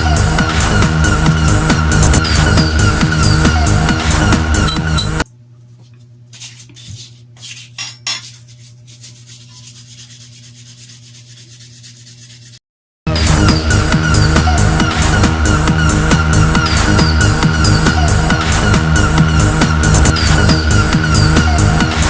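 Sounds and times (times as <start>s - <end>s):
electronic dance music: 0.0s - 5.2s, 13.1s - 22.0s.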